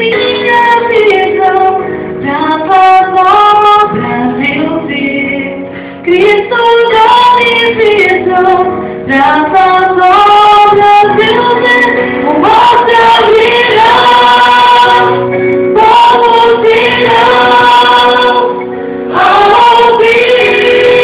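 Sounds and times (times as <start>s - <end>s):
instrumental backing: 0.0s - 21.0s
choir singing worship song: 8.3s - 21.0s.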